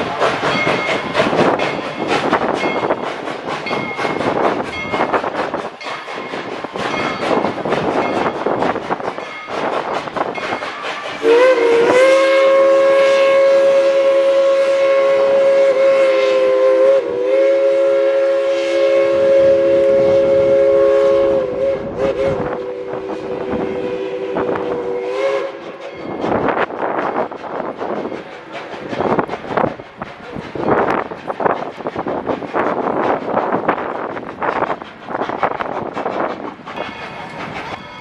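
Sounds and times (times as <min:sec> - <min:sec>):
train running noise: 0:00.0 - 0:38.0
steam locomotive chime whistle: 0:10.4 - 0:26.5.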